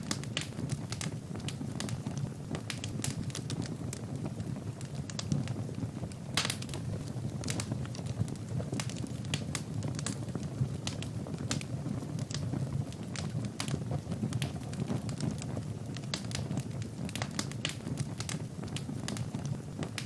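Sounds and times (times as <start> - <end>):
wood fire crackling and popping: 0.0 - 20.0.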